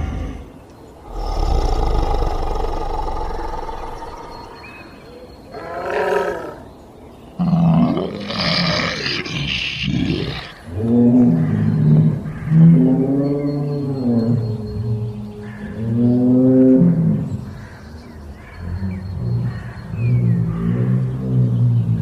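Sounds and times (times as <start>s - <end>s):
monster snarl: 0.0s - 4.7s
monster roar: 0.0s - 4.8s, 7.4s - 10.6s
monster growling: 0.0s - 4.9s, 7.5s - 10.6s.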